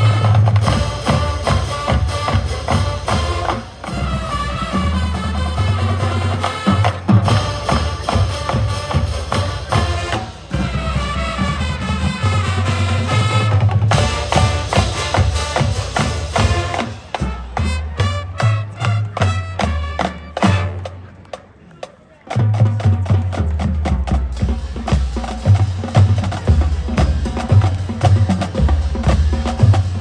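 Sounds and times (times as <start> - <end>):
wind instruments playing tune: 0.0 - 21.3
marching drumline: 0.0 - 30.0.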